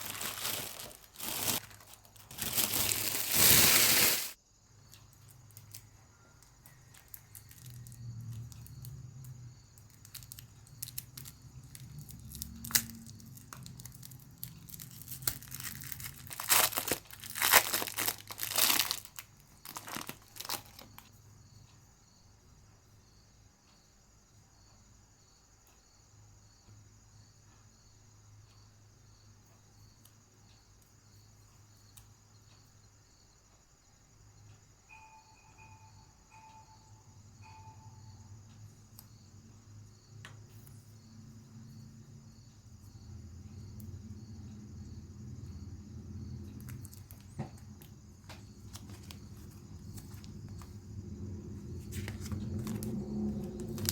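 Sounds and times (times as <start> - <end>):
packaging crinkling and tearing: 0.0 - 4.4, 9.9 - 21.1, 48.5 - 50.7, 51.9 - 53.9.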